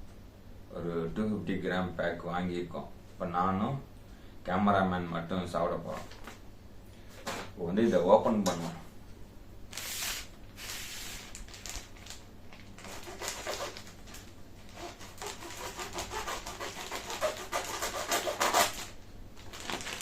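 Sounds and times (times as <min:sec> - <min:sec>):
plastic packet crinkling: 0:09.7 - 0:20.0.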